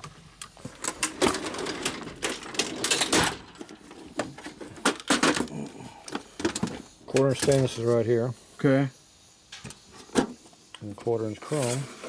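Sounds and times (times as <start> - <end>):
metal hardware clinking and rattling: 0.7 - 5.5, 6.1 - 7.8.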